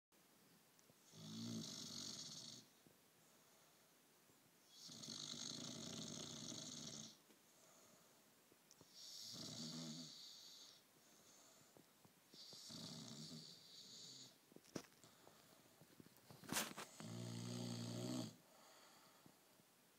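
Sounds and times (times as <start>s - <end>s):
puppy snoring: 1.0s - 2.8s, 4.6s - 7.2s, 8.8s - 11.4s, 12.3s - 14.4s, 16.4s - 18.5s.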